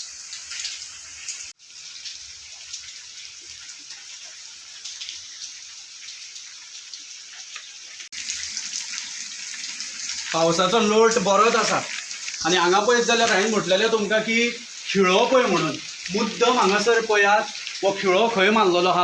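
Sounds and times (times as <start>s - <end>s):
rainwater splashing and trickling: 0.0s - 19.0s
heavy rain falling: 1.7s - 19.0s.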